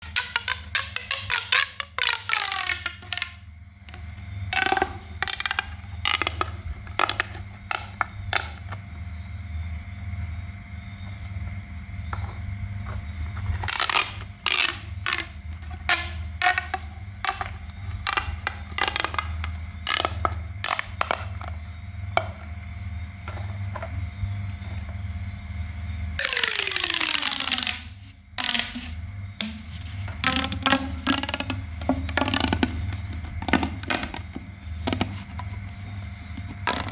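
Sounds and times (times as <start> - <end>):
scraping and creaking: 0.0 - 8.8, 12.1 - 21.6
steady low hum: 0.0 - 36.9.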